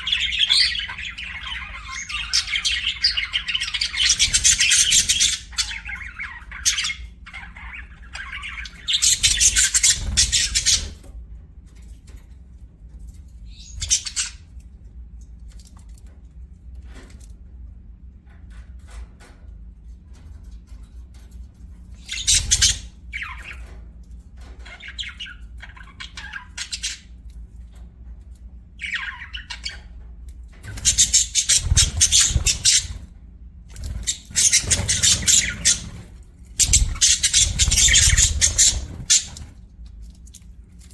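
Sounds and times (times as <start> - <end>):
budgerigar chirping and chattering: 0.0 - 11.0, 13.5 - 14.4, 22.0 - 23.7, 30.7 - 33.0, 33.8 - 39.5.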